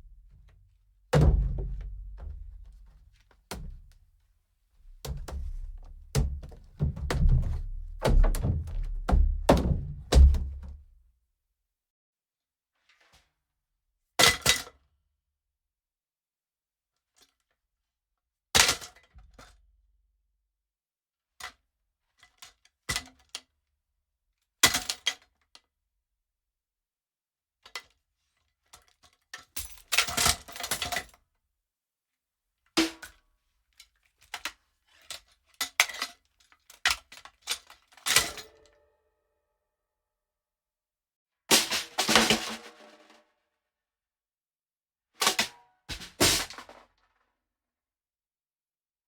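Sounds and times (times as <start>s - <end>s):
kick pedal metallic knocks: 1.2s - 2.9s, 4.9s - 10.9s.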